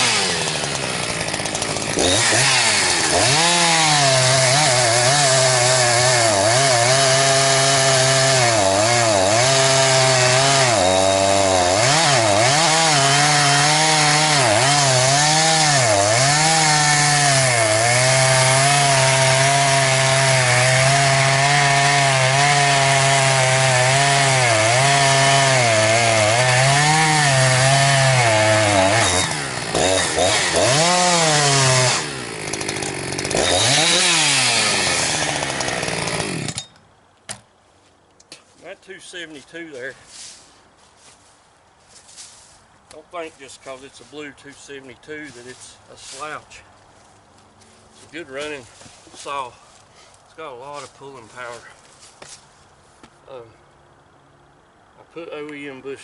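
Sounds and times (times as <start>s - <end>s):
chainsaw cutting wood: 0.0s - 36.8s.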